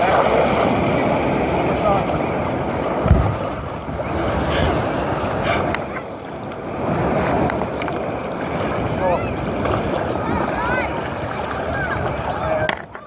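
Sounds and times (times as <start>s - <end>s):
ocean surf washing ashore: 0.0s - 13.0s
wind buffeting microphone: 0.0s - 13.0s.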